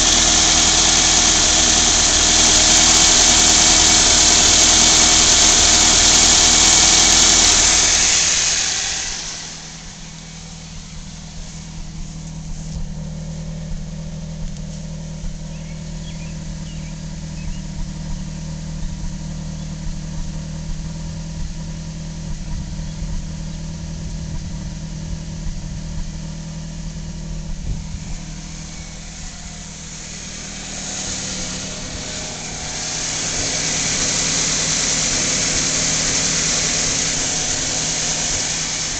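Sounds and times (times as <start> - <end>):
car engine idling: 0.0 - 38.9
engine hiss: 0.0 - 38.9.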